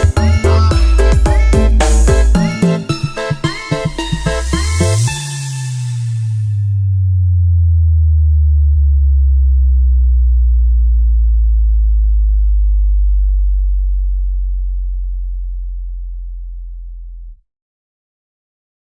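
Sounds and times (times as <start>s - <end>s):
sub-bass tone gliding down: 0.0s - 2.9s, 3.9s - 17.4s.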